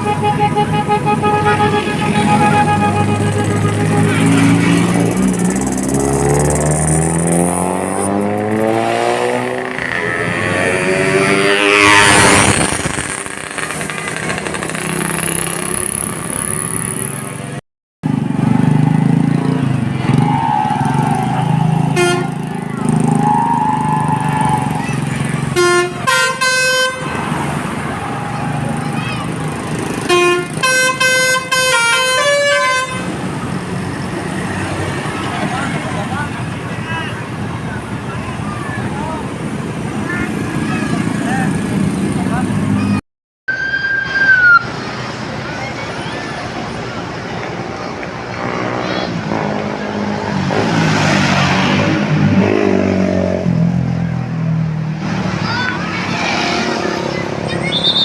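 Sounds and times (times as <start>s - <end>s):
bus multi-tone horn tune: 0.0s - 5.3s, 21.9s - 22.5s, 25.5s - 27.5s, 29.9s - 33.3s
bus engine: 0.0s - 43.0s, 43.6s - 58.0s
road traffic: 0.0s - 58.0s
vehicle engine accelerating: 0.9s - 25.6s.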